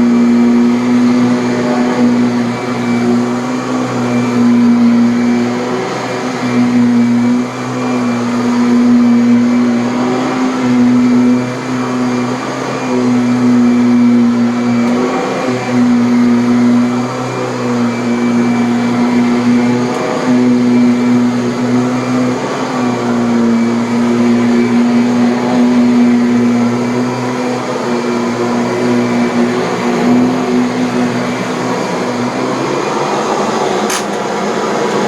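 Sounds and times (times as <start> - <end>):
vacuum cleaner motor drone: 0.0 - 35.0
sharp click: 33.9 - 34.2.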